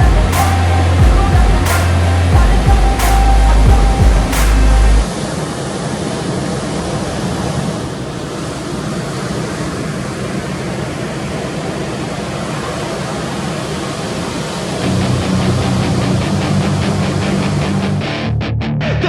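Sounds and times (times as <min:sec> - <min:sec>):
ocean surf rushing: 0:04.2 - 0:17.8.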